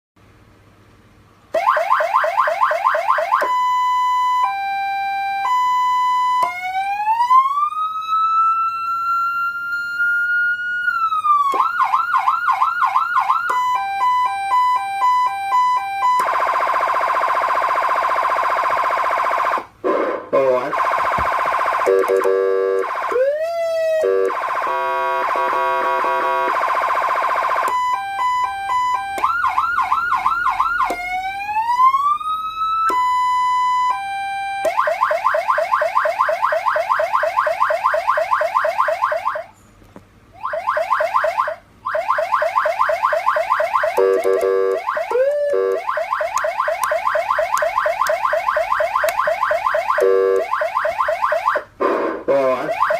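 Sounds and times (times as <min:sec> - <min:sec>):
electronic warning siren: 0:01.5 - 0:39.5, 0:40.4 - 0:52.9.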